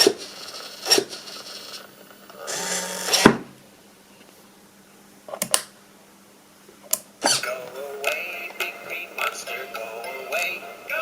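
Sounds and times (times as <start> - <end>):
servos whirring: 2.4 - 3.4.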